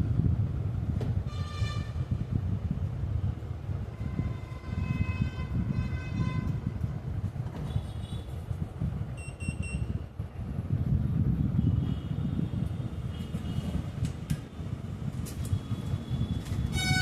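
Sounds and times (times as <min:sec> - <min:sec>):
low traffic rumble: 0:00.0 - 0:17.0
vehicle horns honking: 0:01.3 - 0:02.0, 0:04.0 - 0:06.6, 0:16.7 - 0:17.0.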